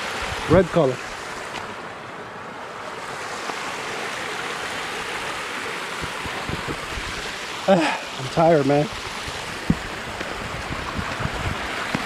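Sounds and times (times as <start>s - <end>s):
small waterfall rushing: 0.0s - 12.0s
soft low knocks: 5.9s - 7.0s, 9.6s - 11.4s.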